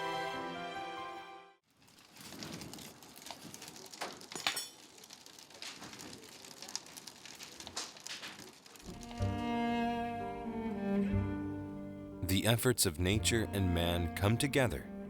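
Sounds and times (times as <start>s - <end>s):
crackling and pattering: 1.7s - 10.3s
cello music: 9.0s - 15.0s.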